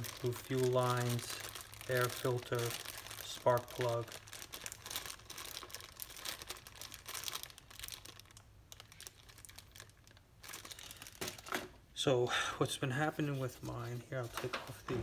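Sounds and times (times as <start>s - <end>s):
packaging clicking and crinkling: 0.0s - 11.8s.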